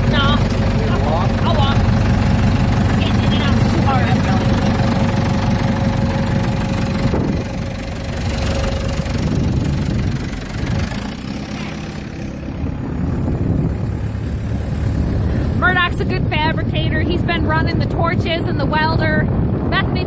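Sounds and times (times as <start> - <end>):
machinery engine idling: 0.0 - 20.0.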